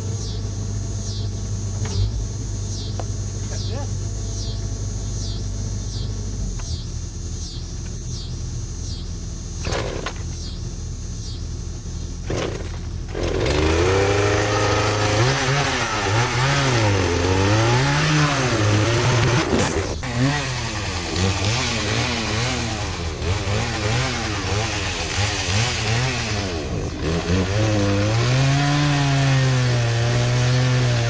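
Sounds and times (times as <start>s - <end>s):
chainsaw cutting wood: 12.3s - 31.0s.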